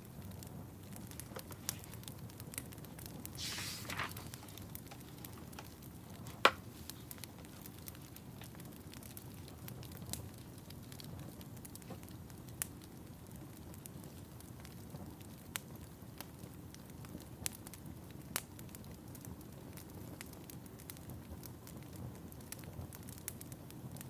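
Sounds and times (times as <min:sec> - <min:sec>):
wood fire crackling: 0:00.0 - 0:24.0
loud sharp pop: 0:06.4 - 0:06.7.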